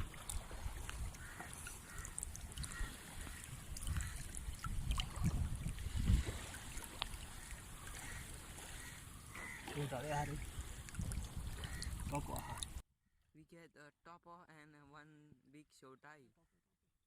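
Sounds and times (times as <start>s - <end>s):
water splashing and dribbling: 0.0s - 12.8s.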